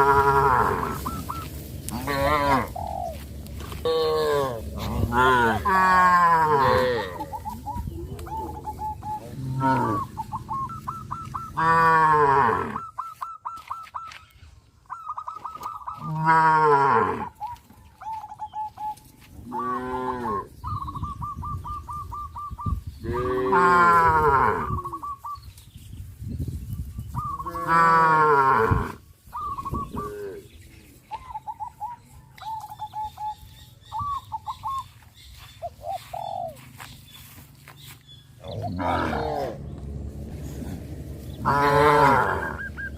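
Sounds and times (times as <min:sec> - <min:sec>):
cows mooing: 0:00.0 - 0:02.8, 0:03.6 - 0:12.9, 0:16.0 - 0:17.4, 0:19.4 - 0:20.6, 0:23.0 - 0:25.0, 0:27.4 - 0:29.0, 0:38.4 - 0:42.9.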